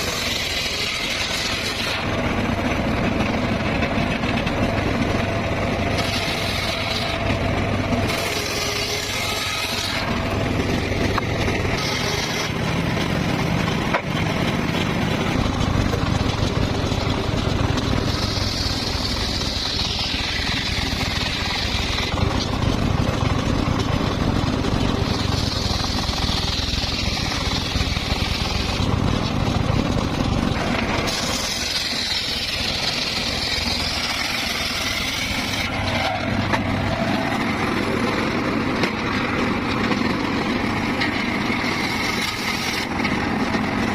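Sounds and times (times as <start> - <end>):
circular saw drone: 0.0 - 43.9
saw blade cutting wood hiss: 31.0 - 35.7, 41.6 - 42.9.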